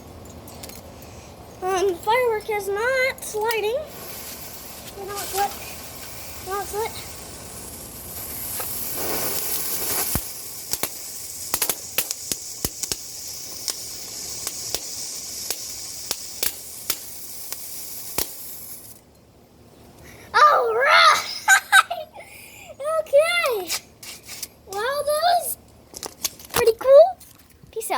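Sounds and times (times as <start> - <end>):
fountain firework hissing: 1.8 - 19.1
crackling pops: 3.1 - 19.0, 25.9 - 27.6.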